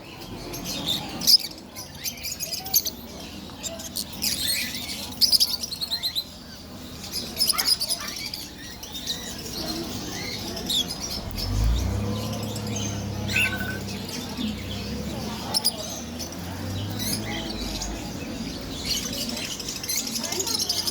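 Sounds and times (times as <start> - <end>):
parrots chirping: 7.0 - 20.9.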